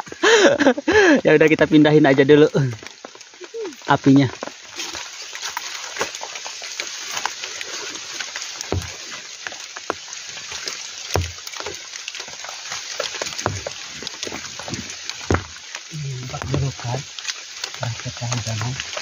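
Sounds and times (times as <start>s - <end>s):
heavy rain hissing: 0.0s - 19.0s
dull thumps: 8.7s - 9.2s, 11.1s - 11.7s, 13.3s - 16.8s.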